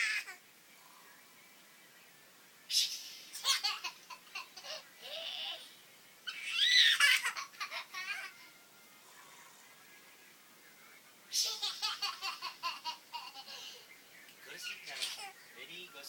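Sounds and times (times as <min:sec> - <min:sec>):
child giggling: 0:03.4 - 0:05.6, 0:06.5 - 0:08.4, 0:11.4 - 0:13.8.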